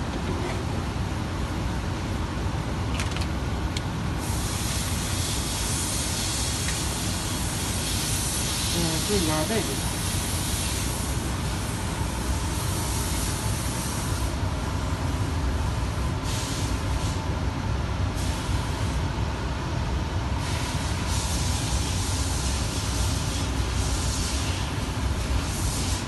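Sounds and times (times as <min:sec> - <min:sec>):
high hiss: 0:04.2 - 0:14.4, 0:20.4 - 0:26.0.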